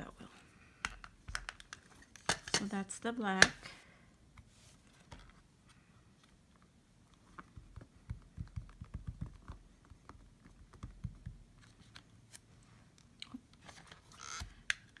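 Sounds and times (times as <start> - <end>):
soft tapping of hand stamping: 7.4 - 11.4.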